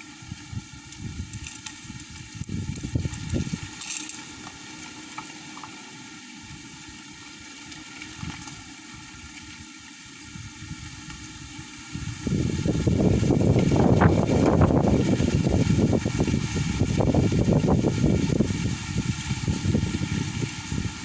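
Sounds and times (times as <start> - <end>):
strong wind buffeting microphone: 0.2 - 3.8, 10.3 - 21.0.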